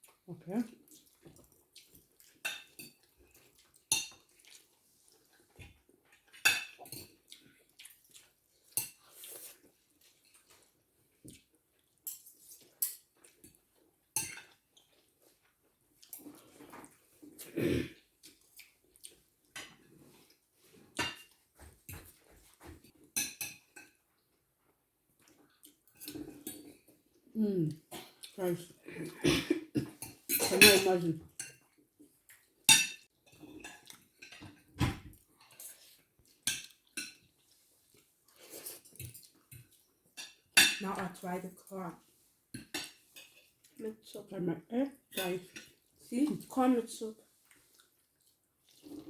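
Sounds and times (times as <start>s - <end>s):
cutlery clinking on plates: 2.3s - 4.3s, 6.2s - 7.2s, 12.0s - 14.7s, 20.9s - 24.0s, 29.8s - 31.6s, 32.7s - 35.8s, 36.4s - 37.3s, 42.6s - 43.6s.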